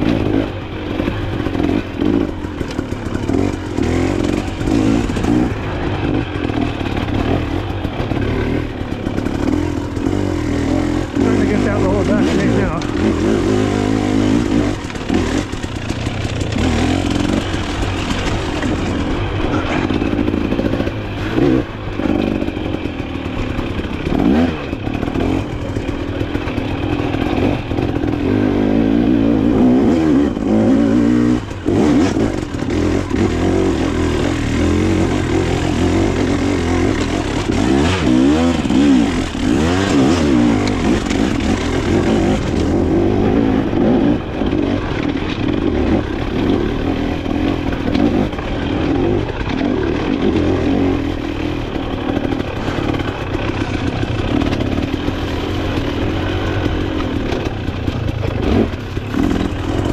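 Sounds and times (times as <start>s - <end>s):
dirt bike engine revving: 0.0s - 59.9s
bike clattering over rough ground: 14.6s - 28.2s, 34.2s - 42.8s.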